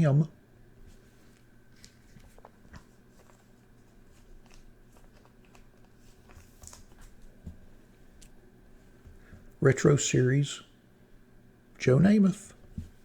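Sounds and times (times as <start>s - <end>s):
low electrical hum: 0.0s - 13.0s
cards clicking and sliding: 1.2s - 3.5s.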